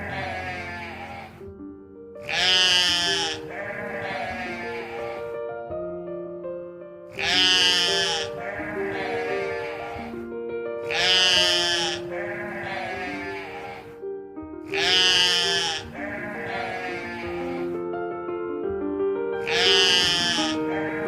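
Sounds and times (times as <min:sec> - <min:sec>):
sheep bleating: 0:00.0 - 0:01.4, 0:02.2 - 0:05.3, 0:07.1 - 0:10.2, 0:10.8 - 0:14.0, 0:14.7 - 0:17.8, 0:19.4 - 0:21.0
background music: 0:00.0 - 0:21.0.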